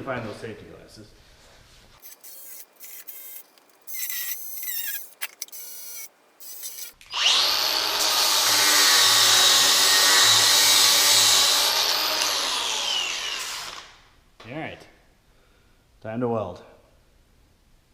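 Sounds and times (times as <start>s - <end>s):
electric grinder whining: 2.0s - 13.9s.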